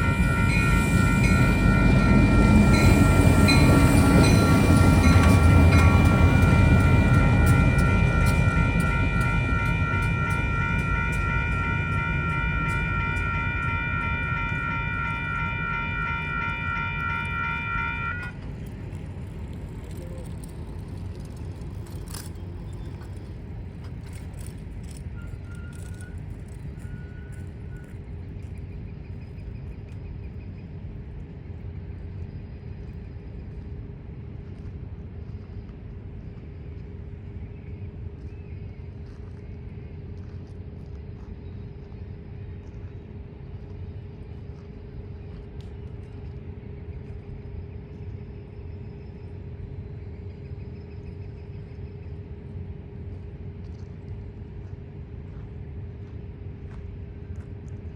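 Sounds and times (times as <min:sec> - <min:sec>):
crossing warning bell ringing: 0:00.0 - 0:18.8
train rumble: 0:00.0 - 0:57.9.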